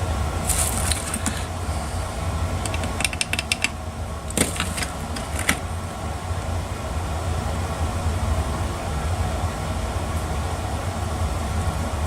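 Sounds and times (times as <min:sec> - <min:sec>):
steady low hum: 0:00.0 - 0:12.0
metal clicks and taps: 0:02.6 - 0:05.6.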